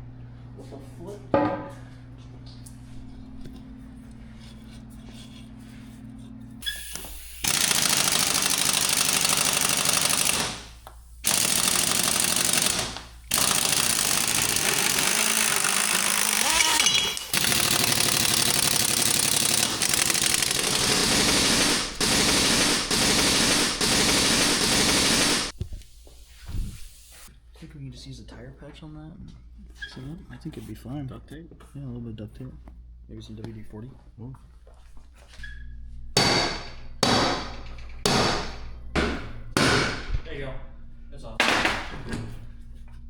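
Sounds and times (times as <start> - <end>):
impact wrench hammering: 7.0 - 25.6, 36.2 - 40.2
low steady hum: 35.7 - 43.0.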